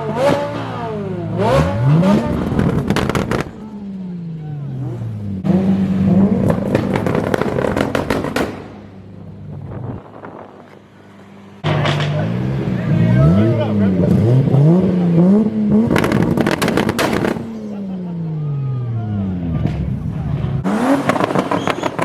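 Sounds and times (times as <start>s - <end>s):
car engine revving: 0.0s - 22.0s
exhaust crackling pops: 2.1s - 3.7s, 6.4s - 9.0s, 15.8s - 17.5s, 19.6s - 22.0s.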